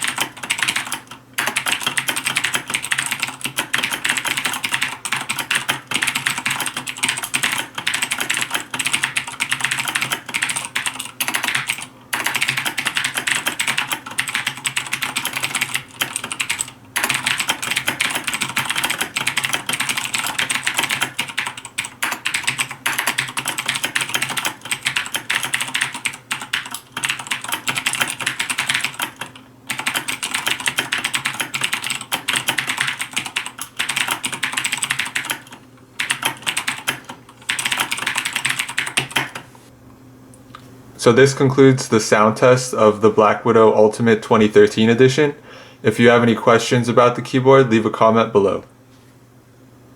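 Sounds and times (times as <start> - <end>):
clicky mechanical keyboard typing: 0.0 - 39.4.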